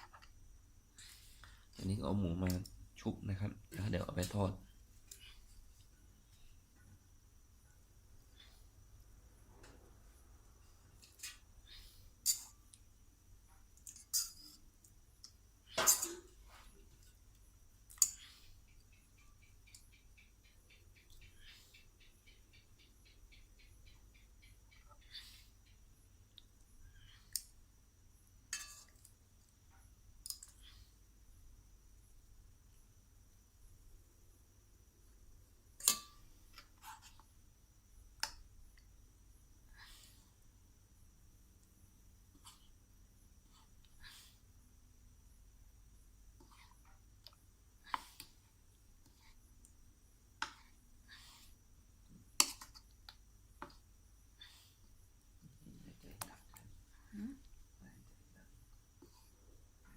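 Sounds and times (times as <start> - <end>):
light clicks of utensils: 13.8 - 17.2, 30.2 - 30.7
kitchen utensils clinking: 15.8 - 16.3.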